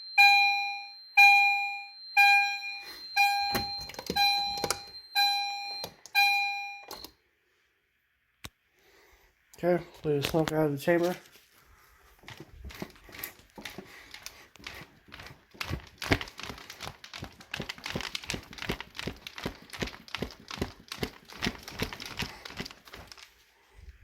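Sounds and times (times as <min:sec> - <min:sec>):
crinkling handling noise: 0:09.8 - 0:24.0.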